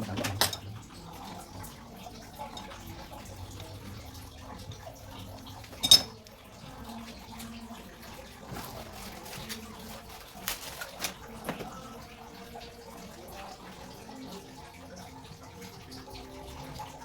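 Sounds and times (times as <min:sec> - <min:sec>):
trickling water: 0:00.0 - 0:17.0.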